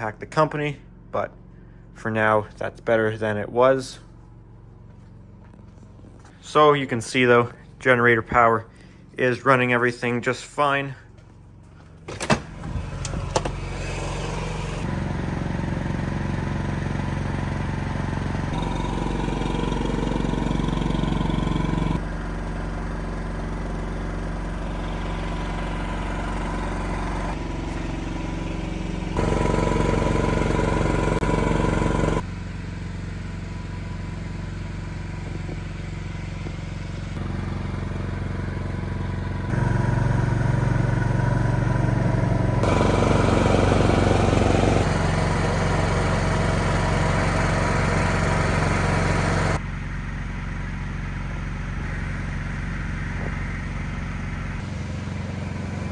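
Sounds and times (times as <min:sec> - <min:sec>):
generator engine running: 0:04.0 - 0:55.9.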